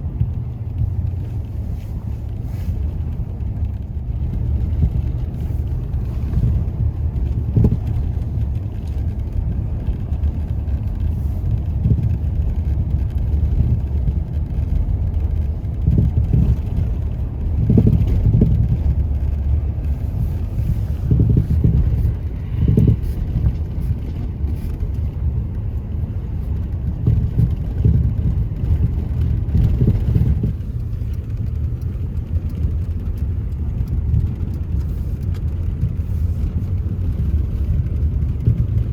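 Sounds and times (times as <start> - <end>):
car road and engine rumble: 0.0 - 38.9.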